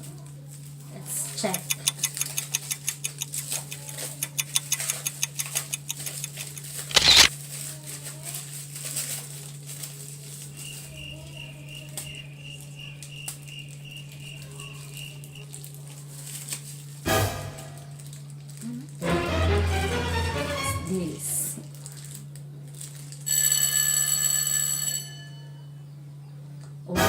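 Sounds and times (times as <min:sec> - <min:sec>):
plastic packaging crinkling: 0:06.0 - 0:10.6, 0:15.5 - 0:17.0, 0:21.6 - 0:23.3.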